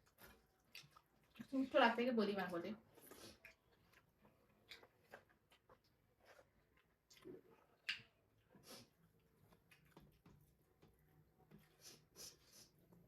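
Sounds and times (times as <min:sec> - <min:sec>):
chewing mouth clicks and smacks: 0:00.0 - 0:01.6, 0:03.0 - 0:08.2.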